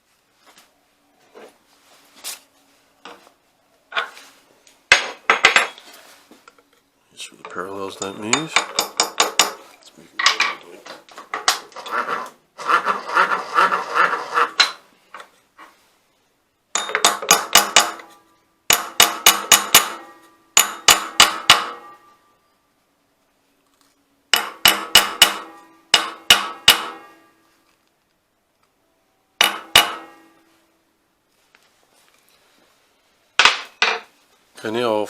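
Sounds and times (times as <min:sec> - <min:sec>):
hammer tapping steel: 0:24.4 - 0:27.2, 0:29.4 - 0:30.4.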